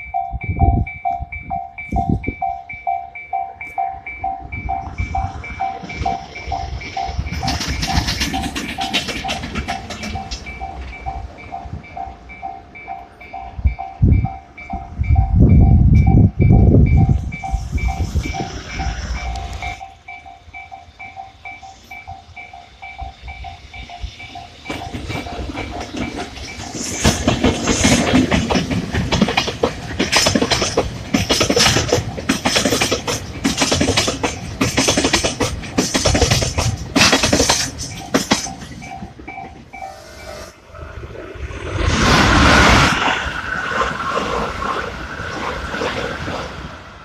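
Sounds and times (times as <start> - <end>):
level crossing warning bell: 0.0 - 27.4, 30.0 - 40.6
trains rumbling past: 0.0 - 47.0
train wheels clattering over joints: 4.7 - 12.5, 21.0 - 39.9.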